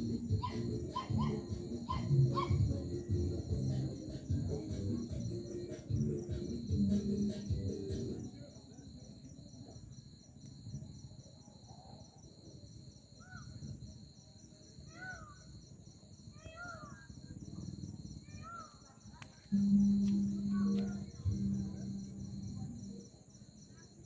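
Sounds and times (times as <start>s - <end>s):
bird calls: 0.0s - 4.9s
insects chirping: 0.0s - 24.0s.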